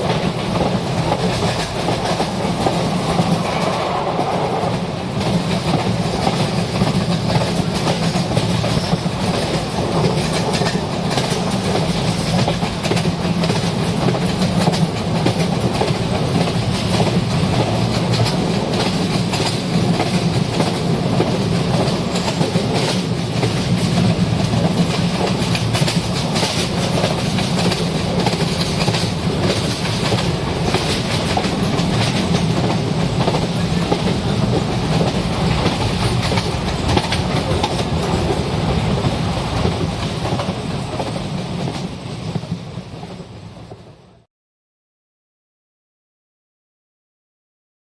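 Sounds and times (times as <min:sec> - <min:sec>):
train rumble: 0:00.0 - 0:44.3
wheel clatter on track: 0:05.2 - 0:41.9.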